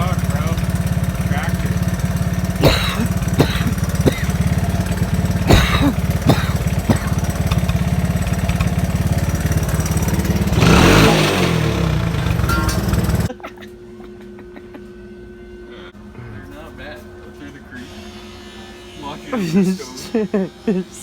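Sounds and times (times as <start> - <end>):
small engine idling: 0.0 - 13.3.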